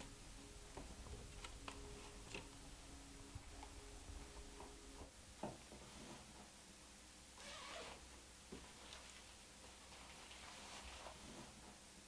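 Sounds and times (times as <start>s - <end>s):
low steady hum: 0.0s - 7.2s.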